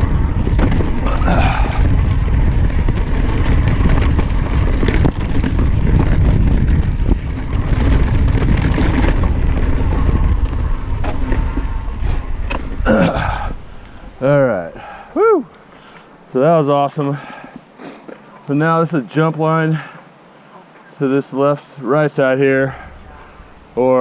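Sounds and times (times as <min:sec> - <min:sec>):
bike knocks and rattles: 0:00.0 - 0:13.3
tyre roar: 0:00.0 - 0:15.5
wind buffeting microphone: 0:00.0 - 0:15.5, 0:22.6 - 0:24.0.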